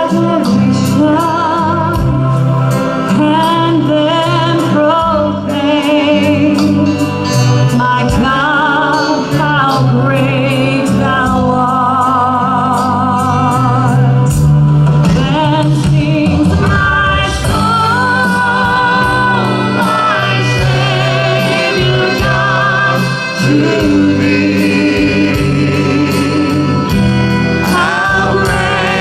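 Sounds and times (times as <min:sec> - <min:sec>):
live band playing: 0:00.0 - 0:29.0
group singing gospel song: 0:16.9 - 0:29.0.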